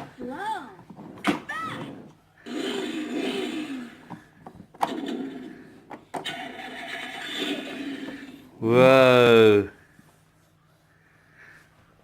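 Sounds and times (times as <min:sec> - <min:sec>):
toy car engine revving sound effect: 0:02.4 - 0:04.1, 0:04.8 - 0:08.4.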